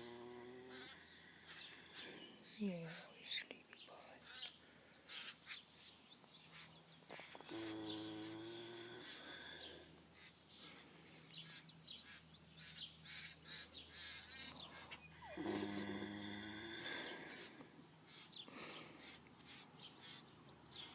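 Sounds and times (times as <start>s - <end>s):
horse snoring: 0.0s - 1.1s, 7.4s - 9.5s, 15.2s - 17.4s
birds chirping: 0.0s - 20.9s.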